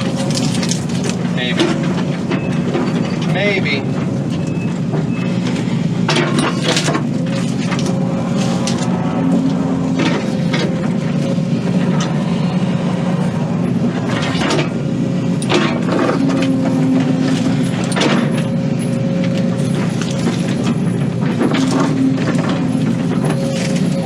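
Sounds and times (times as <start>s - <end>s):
wood and roots cracking: 0.0s - 2.0s, 6.1s - 12.4s, 15.4s - 24.0s
excavator diesel engine running: 0.0s - 24.0s.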